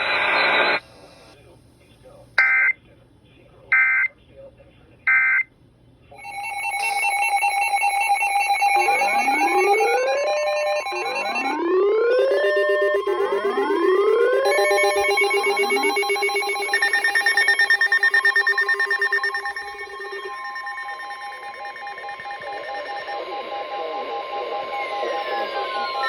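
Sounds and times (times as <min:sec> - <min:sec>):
rapidly pulsing beep: 0:00.0 - 0:00.8, 0:03.7 - 0:04.1, 0:05.1 - 0:05.5, 0:06.2 - 0:26.0
steady electronic alert tones: 0:03.7 - 0:04.1, 0:05.1 - 0:05.4, 0:06.2 - 0:26.0.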